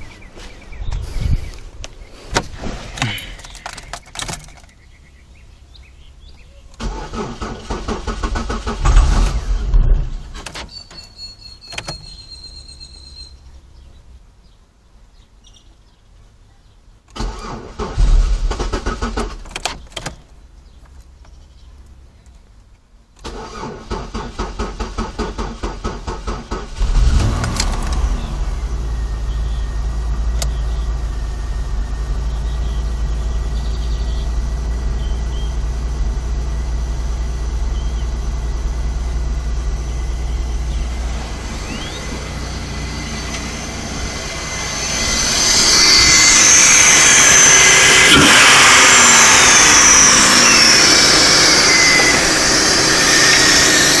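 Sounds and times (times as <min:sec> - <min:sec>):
car engine idling: 0:23.4 - 0:54.0
loud rushing noise: 0:40.9 - 0:54.0.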